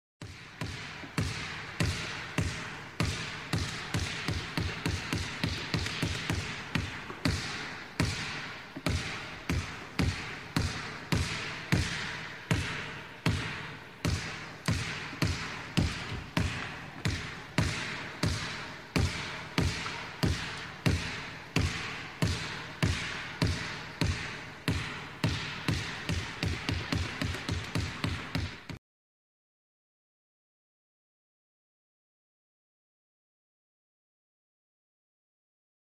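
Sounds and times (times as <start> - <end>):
basketball bouncing on court: 0.2 - 28.8.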